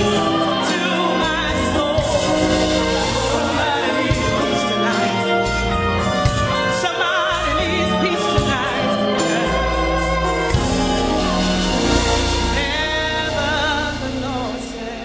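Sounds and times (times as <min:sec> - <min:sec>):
bass notes: 0:00.0 - 0:15.0
person singing with vibrato: 0:00.0 - 0:15.0
drum hits: 0:01.2 - 0:04.7.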